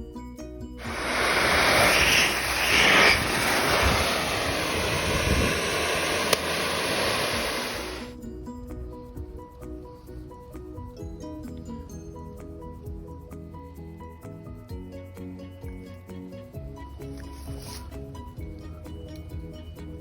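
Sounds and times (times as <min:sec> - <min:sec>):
angle grinder grinding steel: 0:00.8 - 0:08.1
background music: 0:08.1 - 0:20.0.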